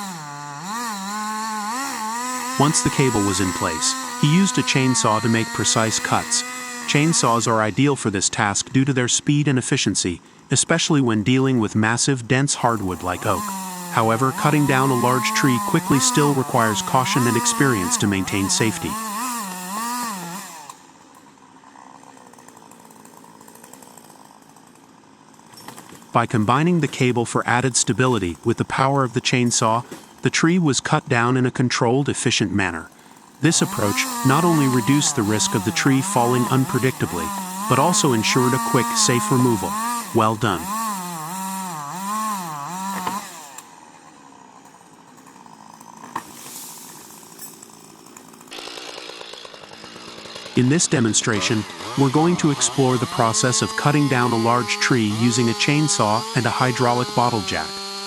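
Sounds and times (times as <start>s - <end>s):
chainsaw engine running: 0.0s - 58.0s
voice: 2.6s - 19.0s, 26.2s - 40.8s, 50.6s - 57.8s.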